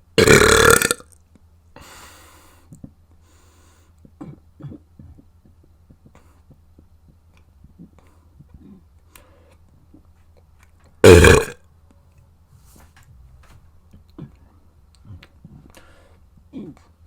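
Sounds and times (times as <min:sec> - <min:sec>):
person burping: 0:00.1 - 0:01.1, 0:04.1 - 0:05.3, 0:11.0 - 0:11.6.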